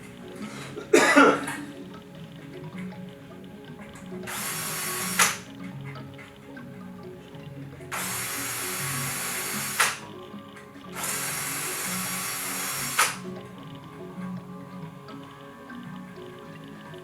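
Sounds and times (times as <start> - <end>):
quiet background music: 0.0 - 17.0
hand-held power tool running: 4.3 - 5.5, 7.9 - 10.1, 11.0 - 13.3
sharp click: 9.6 - 10.0, 12.9 - 13.2.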